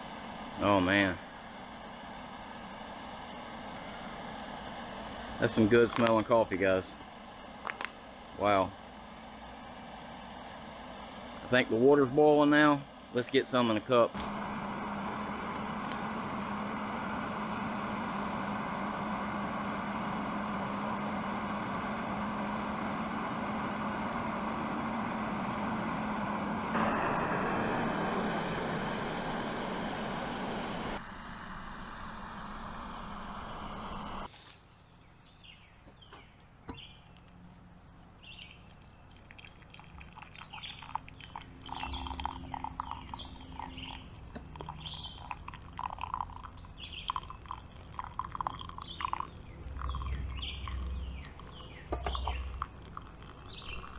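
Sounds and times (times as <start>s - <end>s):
gas stove burning: 0.0s - 34.3s
water boiling in kettle: 14.2s - 31.0s, 38.6s - 53.9s.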